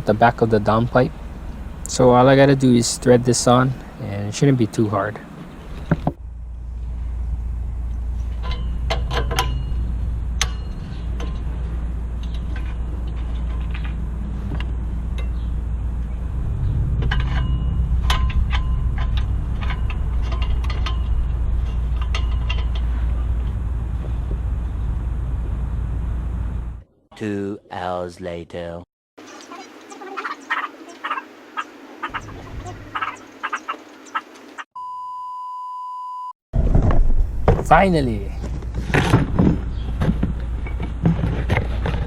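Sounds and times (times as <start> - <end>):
steady low rumble: 0.0 - 26.8, 32.1 - 33.0
metal tools tapping on exhaust pipe: 8.3 - 11.5, 15.1 - 15.5, 17.0 - 23.0.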